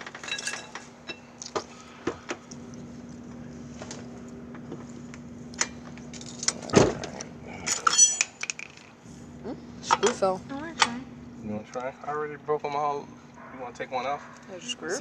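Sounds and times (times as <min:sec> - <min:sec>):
faint steady hum: 0:00.0 - 0:15.0
lug wrench clinking on nuts: 0:00.2 - 0:01.3, 0:07.7 - 0:08.9.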